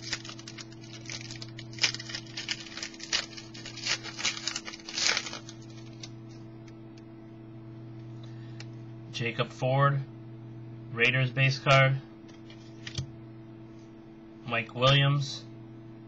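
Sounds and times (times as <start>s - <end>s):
trading cards packaging rustling: 0.0s - 6.4s
low steady hum: 0.0s - 16.0s.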